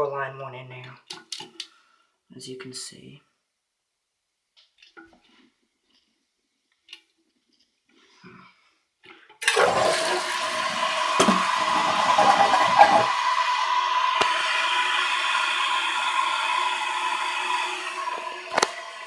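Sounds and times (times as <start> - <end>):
toilet flushing: 9.4 - 19.0
toilet tank refilling: 9.4 - 19.0.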